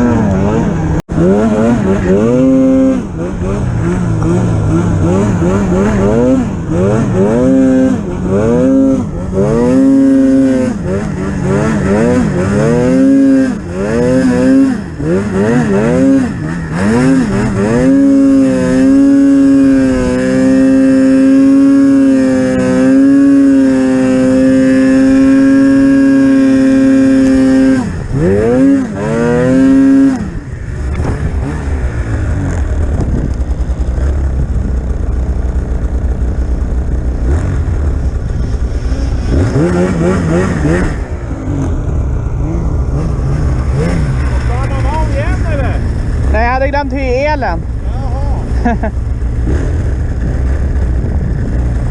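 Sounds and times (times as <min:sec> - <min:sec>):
snowmobile engine revving: 0:00.0 - 0:51.9
low engine rumble: 0:25.0 - 0:51.9.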